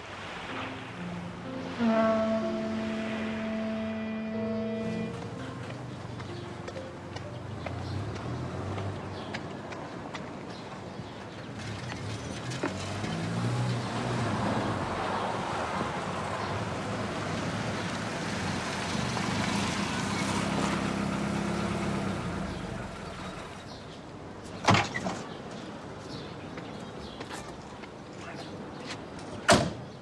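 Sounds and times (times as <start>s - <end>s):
car driving up: 11.5s - 23.8s.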